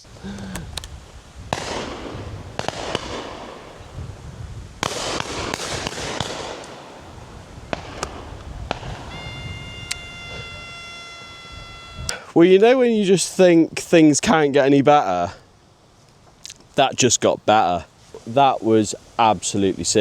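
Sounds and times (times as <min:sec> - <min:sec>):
shotgun shots echoing: 0:01.5 - 0:03.9, 0:04.8 - 0:07.1, 0:07.7 - 0:09.2
steady high-pitched tone: 0:09.0 - 0:12.2.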